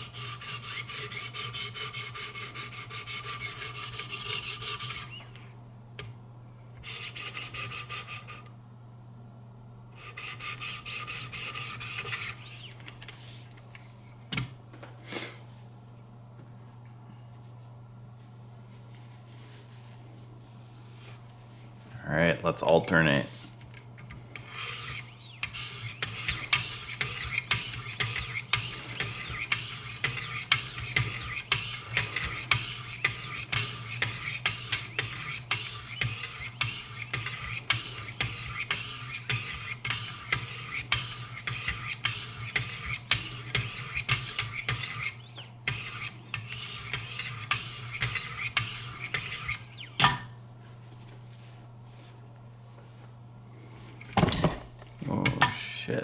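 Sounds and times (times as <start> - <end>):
knife scraping on sharpening stone: 24.5 - 49.6.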